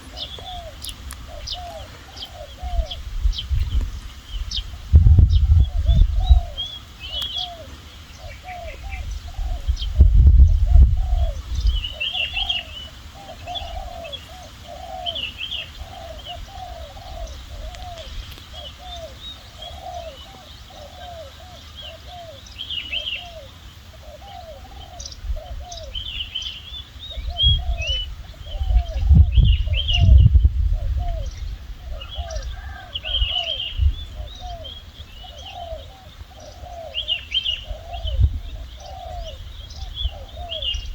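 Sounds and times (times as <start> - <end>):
dove cooing: 0.0 - 3.9, 4.5 - 26.4, 27.0 - 40.9
small birds chirping: 0.0 - 40.9.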